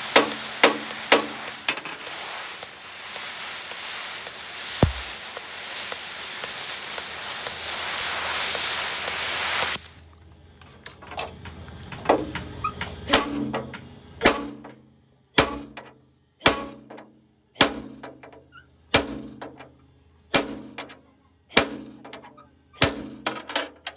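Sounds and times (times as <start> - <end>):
hiss: 0.0 - 10.0.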